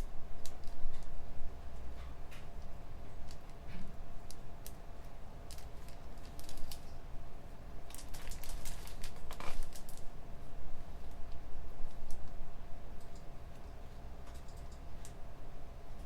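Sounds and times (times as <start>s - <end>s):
low room hum: 0.0s - 16.0s
computer keyboard typing: 14.2s - 15.2s.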